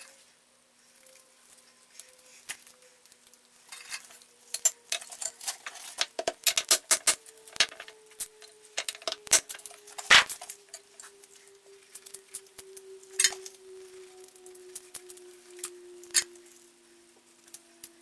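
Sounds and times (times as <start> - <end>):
faint steady hum: 0.0 - 18.0
metal objects clinking: 3.2 - 16.6.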